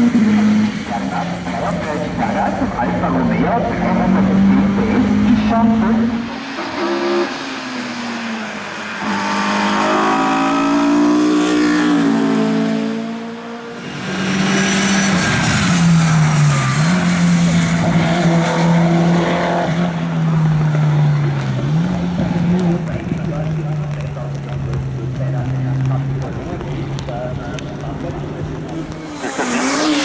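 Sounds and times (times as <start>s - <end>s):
race car engine revving: 0.0s - 30.0s
race car engine high note: 0.1s - 17.6s, 28.7s - 30.0s.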